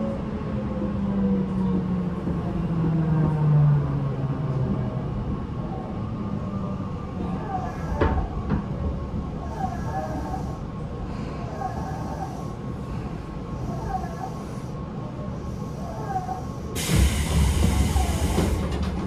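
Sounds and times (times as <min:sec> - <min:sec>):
train wheel and rail rumble: 0:01.4 - 0:19.0
air conditioning running: 0:01.8 - 0:19.0
loud hissing rush: 0:01.8 - 0:19.0.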